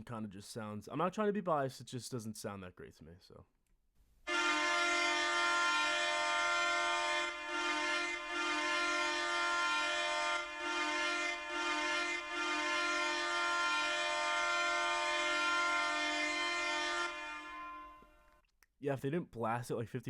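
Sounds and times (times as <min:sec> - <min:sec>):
arena goal horn blasts: 0:04.3 - 0:18.3.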